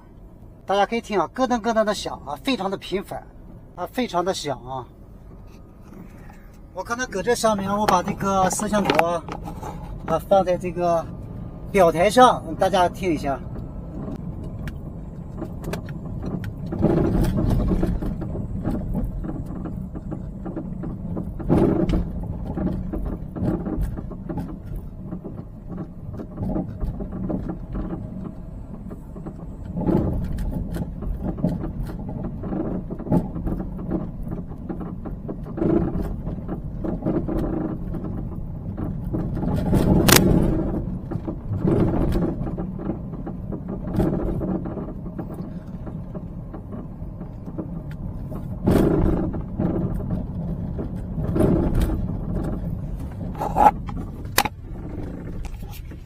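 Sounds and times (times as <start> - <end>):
car cabin driving noise: 0.0 - 56.0
knocking clunks from car underbody: 15.3 - 56.0.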